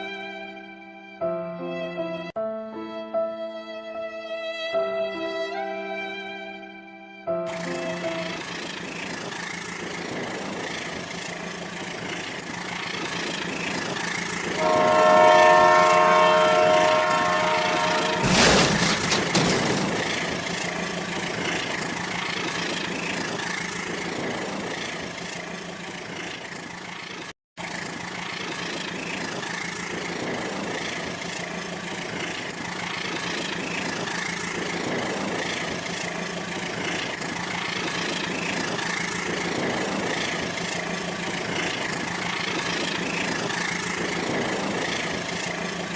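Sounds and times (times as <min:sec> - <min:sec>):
toy train motor hum and rattle: 0:08.4 - 0:14.6
electronic train horn: 0:14.6 - 0:18.3
short sharp clatter: 0:18.2 - 0:20.6.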